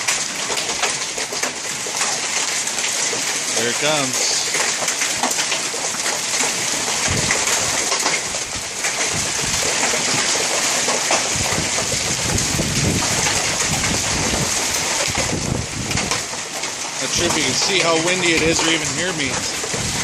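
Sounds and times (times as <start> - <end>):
hail and rain hitting house: 0.0 - 20.0
wind buffeting microphone: 6.9 - 10.5, 11.2 - 16.4, 18.4 - 20.0.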